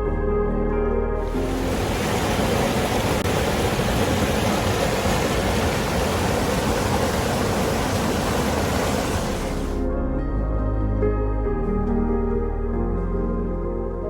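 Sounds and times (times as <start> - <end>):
waterfall roaring: 1.2 - 9.8.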